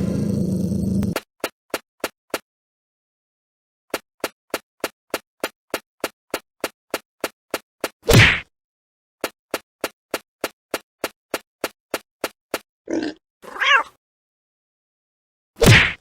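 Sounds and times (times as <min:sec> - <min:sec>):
cat-like cry: 0:13.4 - 0:14.0.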